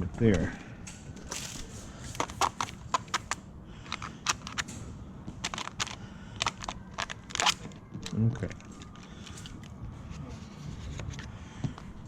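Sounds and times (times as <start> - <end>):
window film crackling: 0.9 - 9.8.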